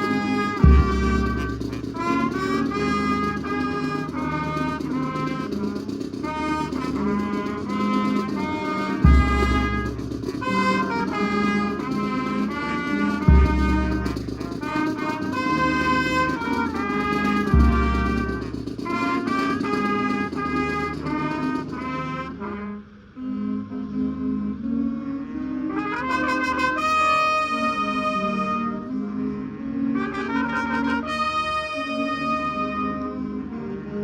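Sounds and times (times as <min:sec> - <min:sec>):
trumpets and trombones chords: 0:00.0 - 0:34.0
bass drum hits: 0:00.6 - 0:02.1, 0:09.0 - 0:11.0, 0:13.2 - 0:15.1, 0:17.4 - 0:19.4.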